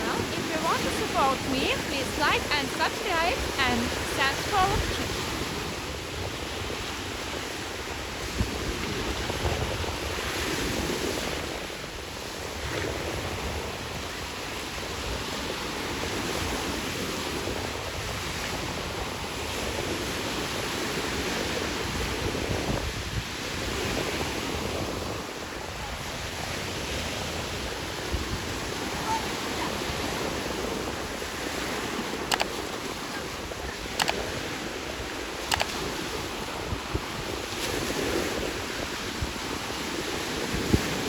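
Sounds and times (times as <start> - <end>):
surf washing onto beach: 0.0 - 41.0
wind on microphone: 0.0 - 41.0
sharp click: 32.3 - 32.6, 34.0 - 34.2, 35.5 - 35.8.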